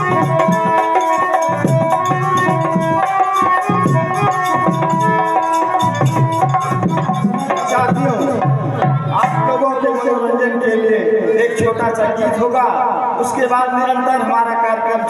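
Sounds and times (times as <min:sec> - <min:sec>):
steady drum rhythm: 0:00.0 - 0:09.8
held melody notes: 0:00.0 - 0:10.2.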